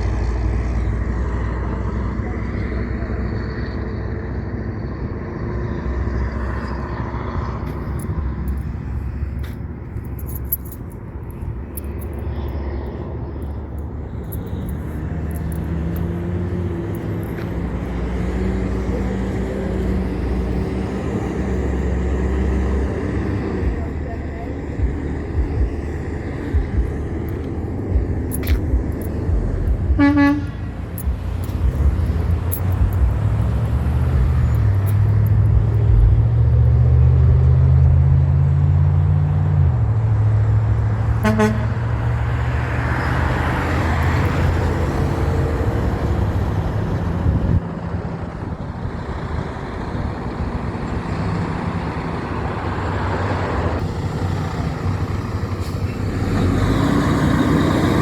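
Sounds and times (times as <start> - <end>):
heavy truck engine revving: 0.0 - 58.0
traffic noise: 0.0 - 58.0
horn toots: 29.7 - 32.1, 41.2 - 42.0.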